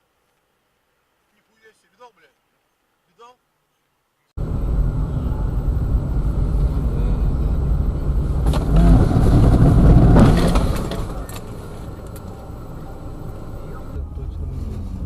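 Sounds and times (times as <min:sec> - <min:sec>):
car engine and road rumble: 0:04.4 - 0:15.0.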